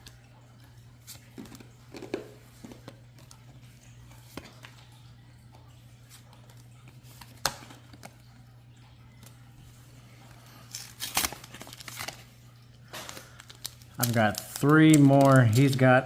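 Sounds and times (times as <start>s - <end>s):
foil crinkling: 10.1s - 16.0s.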